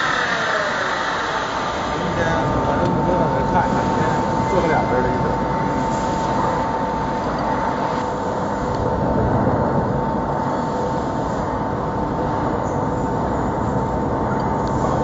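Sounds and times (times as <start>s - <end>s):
wood lathe running with whine: 0.0s - 5.9s.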